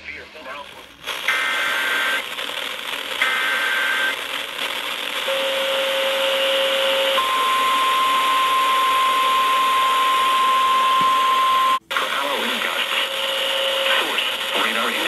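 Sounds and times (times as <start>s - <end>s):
steady warning alarm tone: 5.2s - 11.8s
radio signal hiss: 11.8s - 15.0s.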